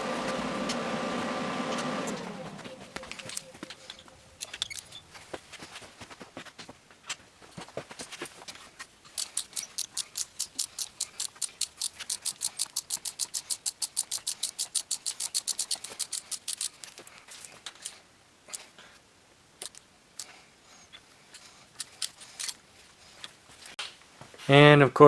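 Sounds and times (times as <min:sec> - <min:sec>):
metallic clicks and clinks: 0:09.0 - 0:18.7, 0:19.6 - 0:20.4, 0:21.3 - 0:22.6
ratchet wrench clicking: 0:09.1 - 0:17.9.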